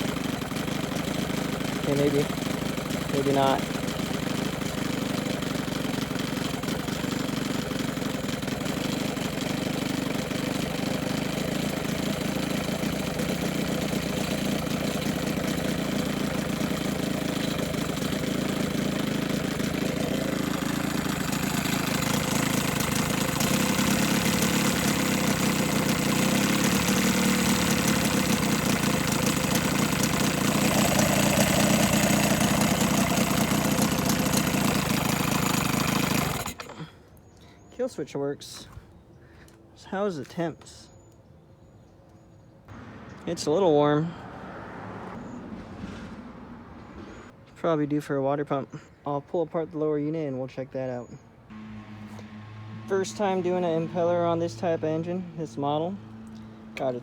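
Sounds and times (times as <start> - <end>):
outboard motor running: 0.0 - 36.9, 51.5 - 57.0.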